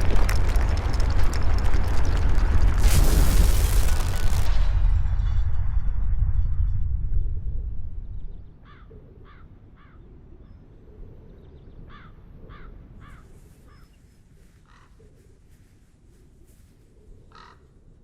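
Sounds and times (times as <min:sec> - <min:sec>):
deep rumble: 0:00.0 - 0:08.7
crows cawing: 0:08.6 - 0:10.0, 0:11.9 - 0:13.9, 0:14.6 - 0:15.0, 0:17.3 - 0:17.8.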